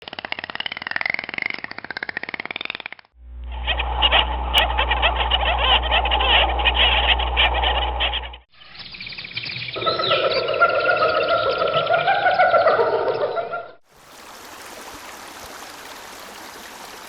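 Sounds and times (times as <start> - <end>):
sustained music tones: 3.2 - 8.4
low steady hum: 3.2 - 8.5
rapid chirping animal calls: 3.5 - 13.8.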